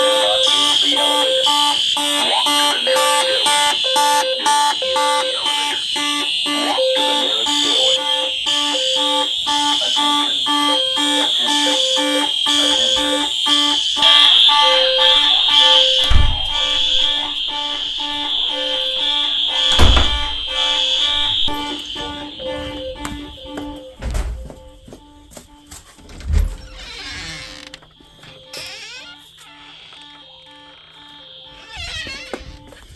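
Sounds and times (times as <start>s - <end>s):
fire alarm horns pulsing: 0.0s - 32.9s
heavy thumps: 14.4s - 26.6s.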